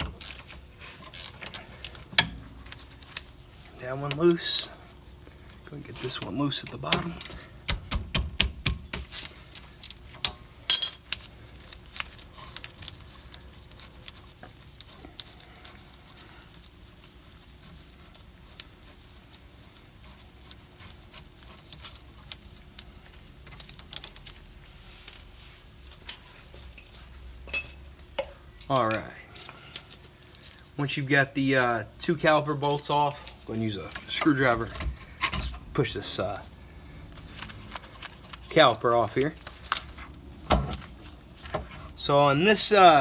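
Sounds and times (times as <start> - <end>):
wrench and bolts clinking: 10.7 - 11.2.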